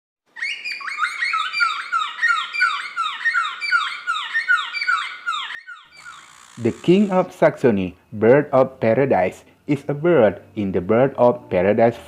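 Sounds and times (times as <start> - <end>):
bird calling downward-sliding notes: 0.3 - 7.3.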